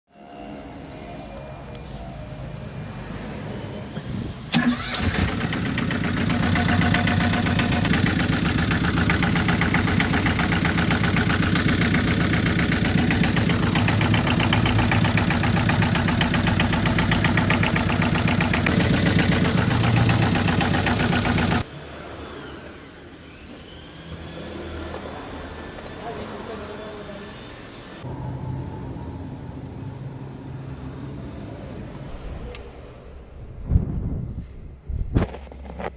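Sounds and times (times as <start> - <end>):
car engine starting and idling: 4.3 - 21.7.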